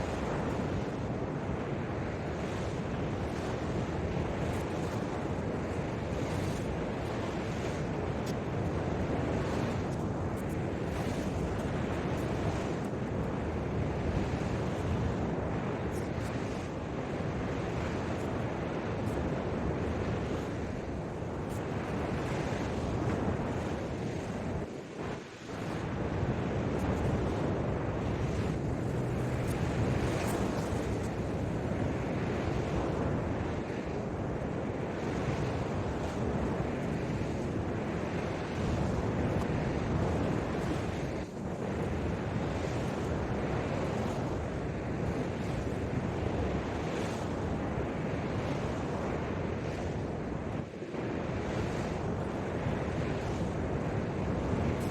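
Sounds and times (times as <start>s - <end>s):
surf washing onto beach: 0.0s - 54.9s
wind buffeting microphone: 0.0s - 54.9s.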